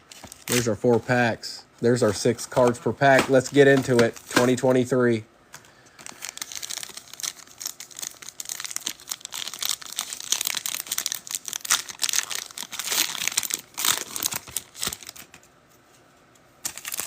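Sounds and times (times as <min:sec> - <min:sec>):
wrappers tearing and crinkling: 0:05.9 - 0:15.4, 0:16.6 - 0:17.0.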